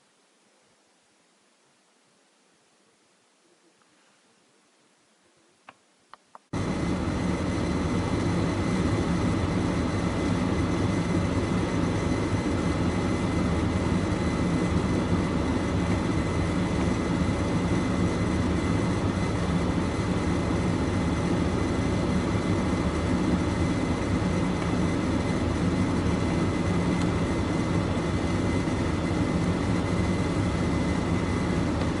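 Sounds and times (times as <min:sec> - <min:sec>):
faint high whine: 0:00.0 - 0:32.0
engine-like drone: 0:06.6 - 0:32.0.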